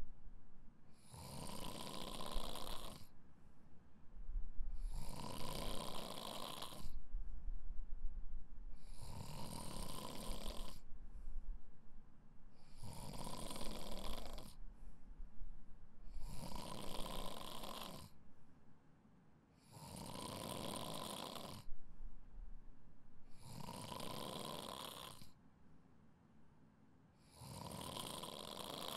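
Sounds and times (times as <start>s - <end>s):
person snoring: 1.0s - 3.1s, 4.8s - 6.9s, 8.8s - 10.8s, 12.6s - 14.6s, 16.1s - 18.1s, 19.6s - 21.7s, 23.3s - 25.3s, 27.2s - 28.9s.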